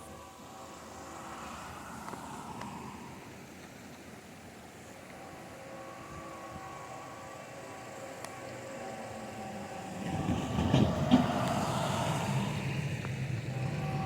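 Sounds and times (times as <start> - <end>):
train rumble: 0.0 - 14.0
locomotive air horn chord: 5.0 - 12.6, 13.4 - 14.0.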